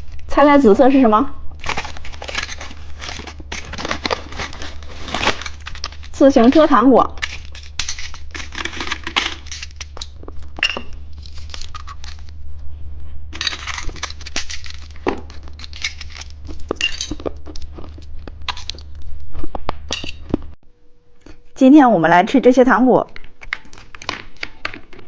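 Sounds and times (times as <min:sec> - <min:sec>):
steady low hum: 0:00.0 - 0:25.0
plastic packaging crinkling: 0:01.5 - 0:12.4, 0:13.4 - 0:19.5.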